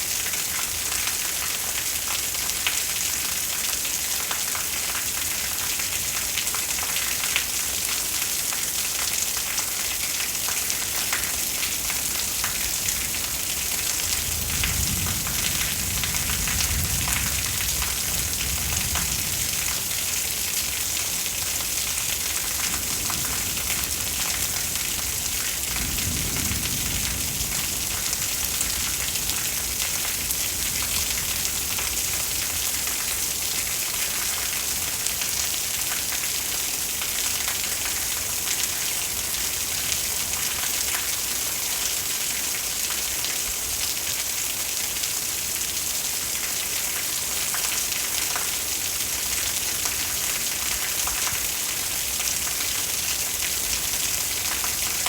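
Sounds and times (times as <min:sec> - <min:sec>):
heavy rain falling: 0:00.0 - 0:55.0
low thunder rumble: 0:22.5 - 0:31.4.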